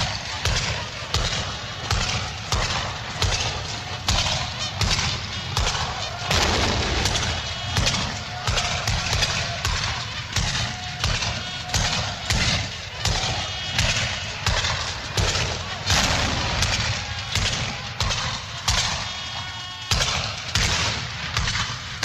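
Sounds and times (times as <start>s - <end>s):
low rumble of combat: 6.3s - 8.2s, 15.3s - 17.9s
single gunshots cracking: 15.3s - 17.8s.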